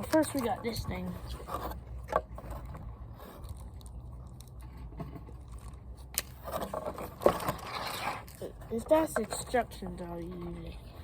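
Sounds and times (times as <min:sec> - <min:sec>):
low steady hum: 0:00.0 - 0:11.0
packaging rustling and scraping: 0:04.9 - 0:10.6.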